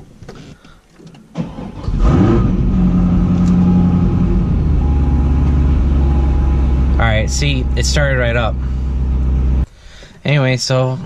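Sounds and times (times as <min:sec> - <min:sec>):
car engine cranking and starting: 0:01.2 - 0:09.7
car engine idling: 0:01.8 - 0:09.7.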